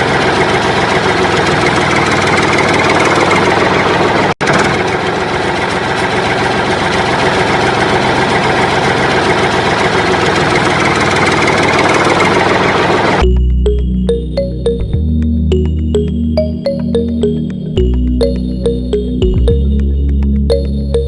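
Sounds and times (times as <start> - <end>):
engine idling: 0.0 - 13.4.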